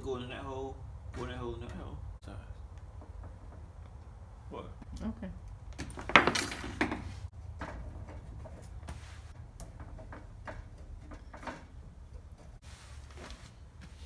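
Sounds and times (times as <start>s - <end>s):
tools clicking and tapping: 4.8s - 12.6s.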